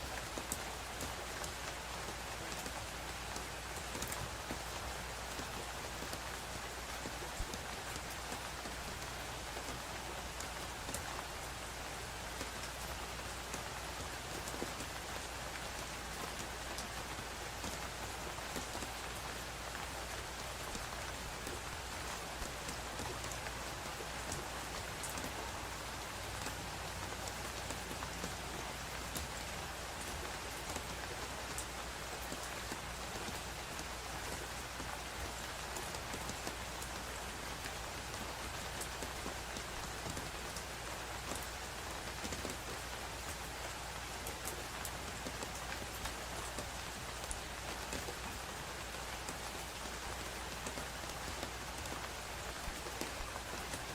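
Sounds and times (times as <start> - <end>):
steady rain falling: 0.0 - 53.9.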